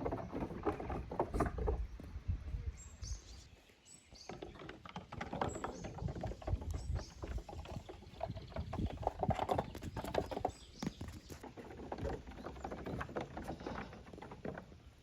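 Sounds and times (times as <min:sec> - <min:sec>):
goat hooves clattering: 0:03.5 - 0:15.0.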